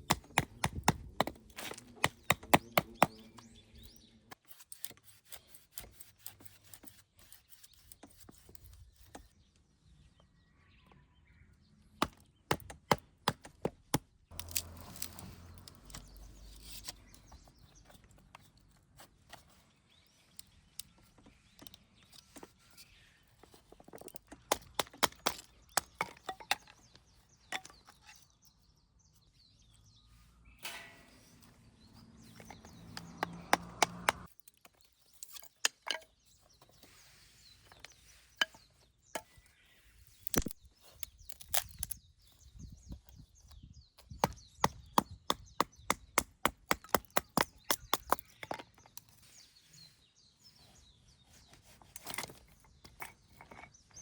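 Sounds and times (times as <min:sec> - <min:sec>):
firewood being chopped: 0:00.0 - 0:03.3, 0:12.0 - 0:16.1, 0:24.4 - 0:26.7, 0:32.4 - 0:34.3, 0:44.1 - 0:48.6.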